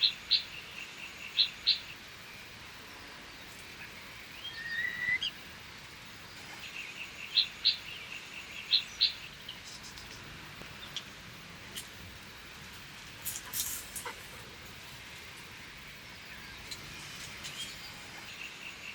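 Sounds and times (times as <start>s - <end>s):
background hiss: 0.0s - 18.9s
bird whistle: 4.4s - 5.3s
sharp high bird chirps: 4.4s - 5.4s.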